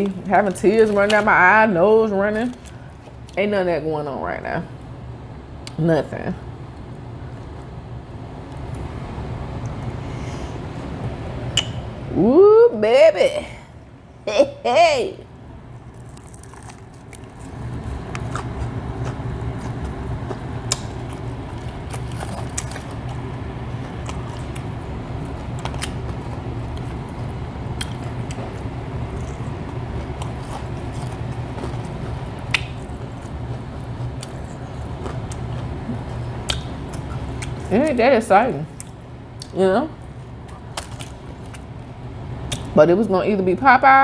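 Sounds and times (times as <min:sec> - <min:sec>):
person chewing crunchy food: 0:00.0 - 0:01.4, 0:02.4 - 0:03.4, 0:15.5 - 0:37.8, 0:38.5 - 0:42.8
steady low hum: 0:00.0 - 0:44.0.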